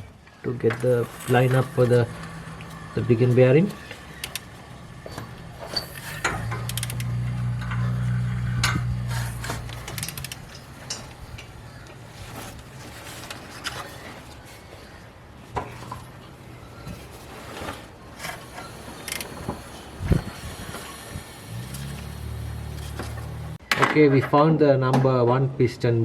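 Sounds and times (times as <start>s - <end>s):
metal tools clinking: 0.6s - 11.6s
low hum: 1.2s - 12.0s
ratchet wrench clicking: 6.0s - 7.8s, 8.6s - 10.6s.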